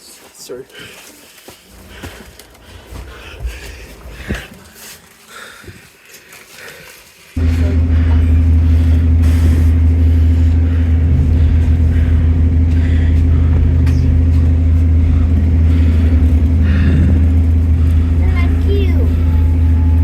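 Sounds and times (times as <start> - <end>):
bus engine droning: 7.4 - 20.0
constant hum: 7.4 - 20.0.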